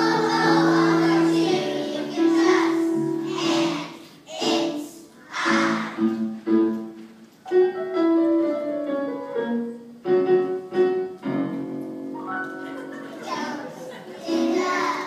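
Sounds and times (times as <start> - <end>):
keyboard melody: 5.6 - 13.2.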